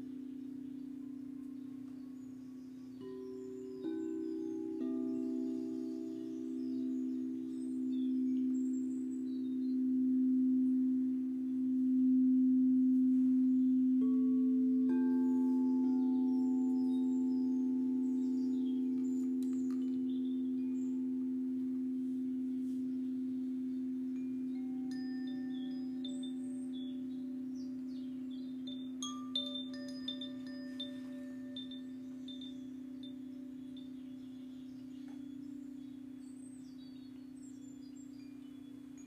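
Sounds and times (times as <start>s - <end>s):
singing bowl ringing: 0.0s - 39.0s
higher bell-like chime tones: 28.8s - 33.5s.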